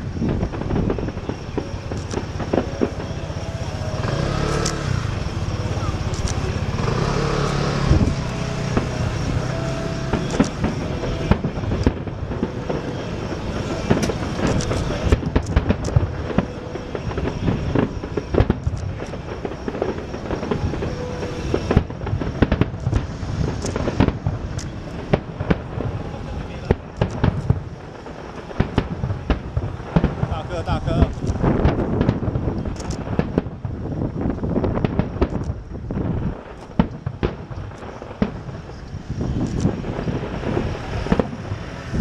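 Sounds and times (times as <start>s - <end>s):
low engine hum: 0.0s - 28.0s
fireworks crackling and banging: 0.0s - 42.0s.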